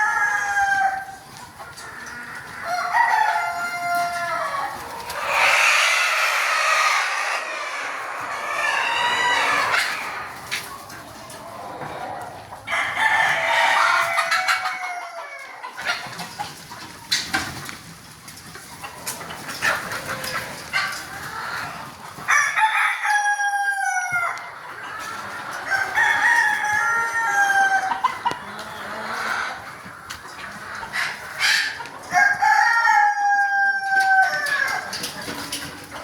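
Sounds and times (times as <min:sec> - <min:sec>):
roosters crowing: 0:00.0 - 0:01.3, 0:01.9 - 0:10.6, 0:11.6 - 0:15.7, 0:21.2 - 0:29.7, 0:31.0 - 0:35.0
chickens clucking: 0:00.0 - 0:36.0.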